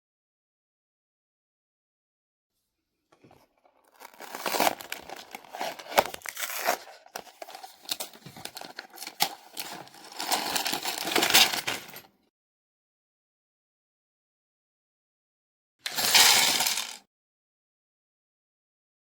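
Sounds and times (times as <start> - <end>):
packaging torn and crinkled: 3.8 - 11.9.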